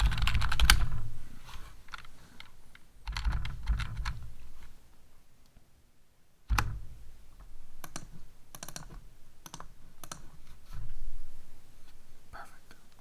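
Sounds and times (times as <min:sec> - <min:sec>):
keyboard keys clicking: 0:00.0 - 0:01.0, 0:01.9 - 0:04.3, 0:07.8 - 0:10.3.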